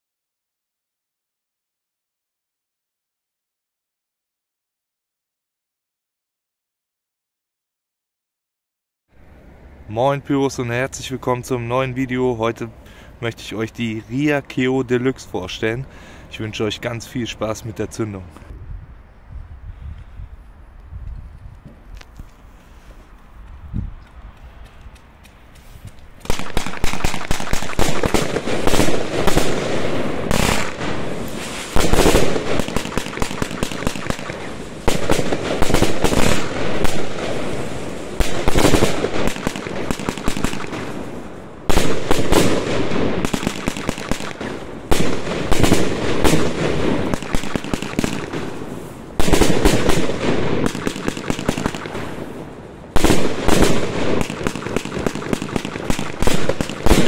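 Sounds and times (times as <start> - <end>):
firework cake firing: 26.2 - 41.1, 41.7 - 52.4, 53.0 - 57.0.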